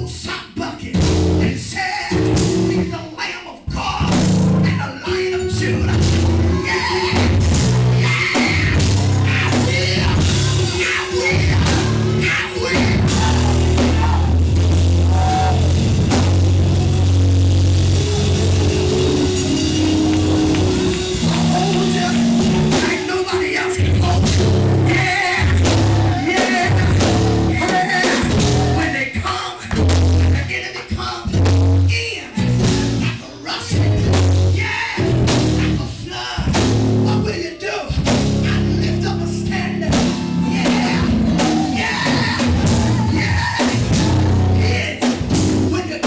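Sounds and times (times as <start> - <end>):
drum kit: 0.0 - 3.1, 3.7 - 46.0
live band playing loud music: 0.0 - 46.0
heavy bass line: 0.8 - 3.0, 3.8 - 29.1, 29.7 - 30.6, 31.3 - 46.0
voices singing or shouting: 3.7 - 15.9, 18.0 - 29.7, 38.8 - 45.1.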